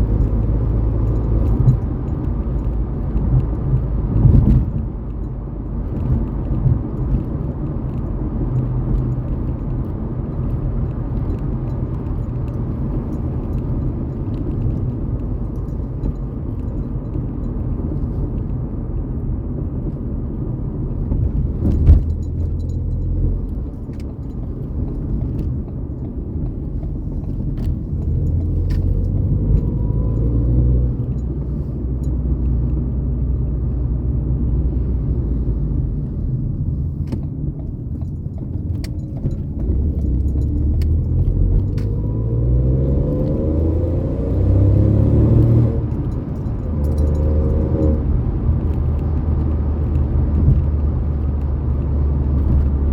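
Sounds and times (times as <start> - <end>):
car engine and road rumble: 0.0 - 52.9
small clicks and rattles: 36.8 - 42.0.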